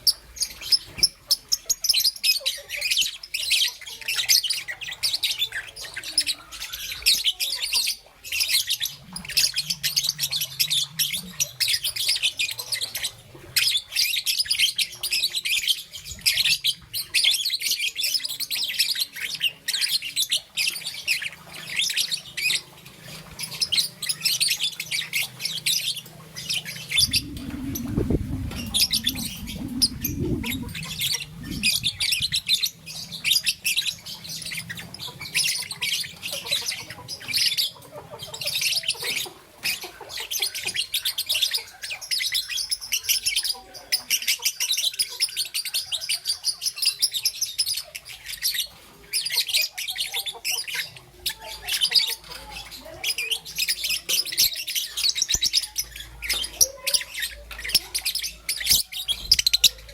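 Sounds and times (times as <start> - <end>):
lovebird chirping and squawking: 0.0 - 59.9
low muffled sound: 26.8 - 32.5.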